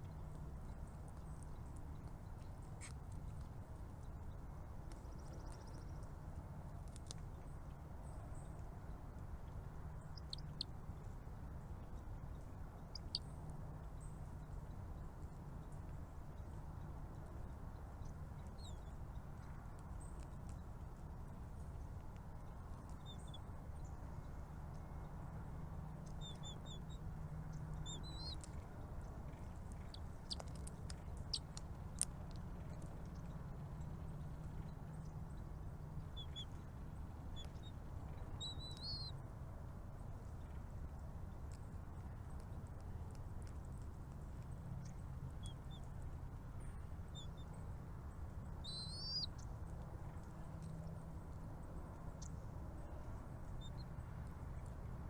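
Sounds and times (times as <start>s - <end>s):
small birds chirping: 0.0s - 39.2s, 40.0s - 54.9s
steady low rumble: 0.0s - 55.0s.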